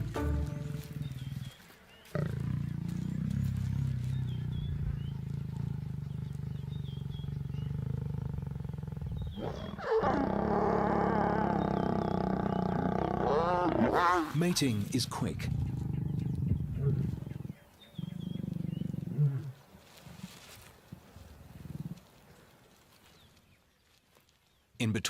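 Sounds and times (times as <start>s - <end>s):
lions growling and snarling: 0.8s - 14.4s, 15.1s - 19.6s.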